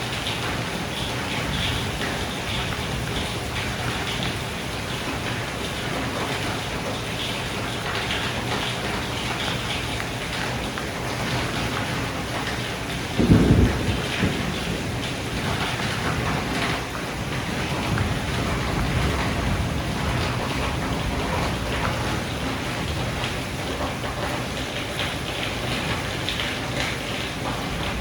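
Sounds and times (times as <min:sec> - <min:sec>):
heavy rain falling: 0:00.0 - 0:28.0
thunder clap rumbling: 0:11.1 - 0:24.3, 0:27.4 - 0:28.0.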